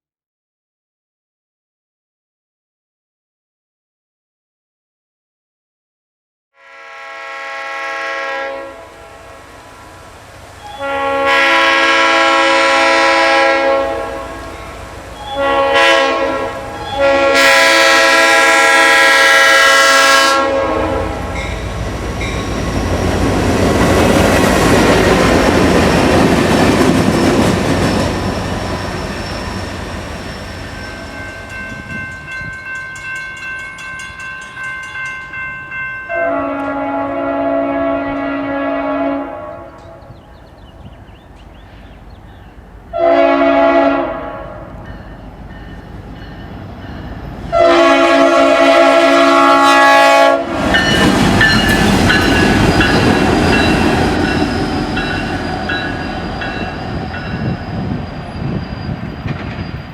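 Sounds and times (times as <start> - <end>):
locomotive air horn blasts: 6.6 - 10.0, 10.6 - 21.7, 36.1 - 40.1, 42.9 - 44.9, 47.5 - 52.9
locomotive rumble: 8.9 - 35.2, 36.6 - 59.9.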